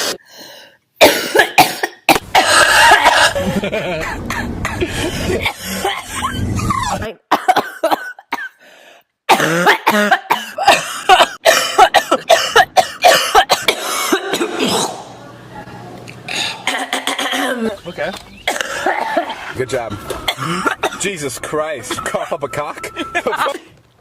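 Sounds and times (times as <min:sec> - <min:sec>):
woman coughing: 0:01.0 - 0:03.5, 0:04.3 - 0:08.6, 0:09.3 - 0:15.1, 0:16.4 - 0:17.8, 0:18.5 - 0:19.4, 0:20.3 - 0:21.0.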